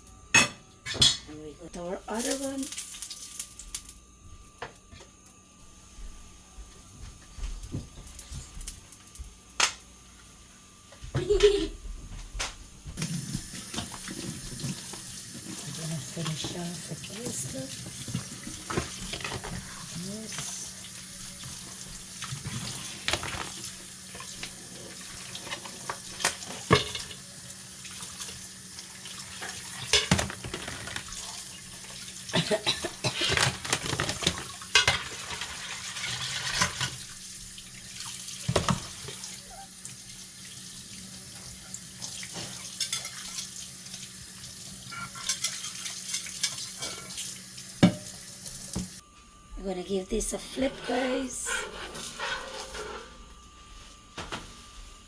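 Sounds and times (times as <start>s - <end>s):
dishes and utensils clinking: 0.4s - 1.3s, 25.4s - 27.2s, 29.4s - 31.4s, 32.4s - 37.0s, 42.3s - 43.5s, 44.9s - 47.2s
tap running into a sink: 47.8s - 49.0s.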